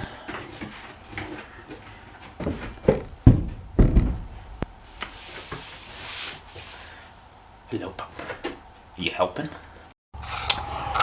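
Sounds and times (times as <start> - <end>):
steel axle thudding on floor: 2.4 - 5.1.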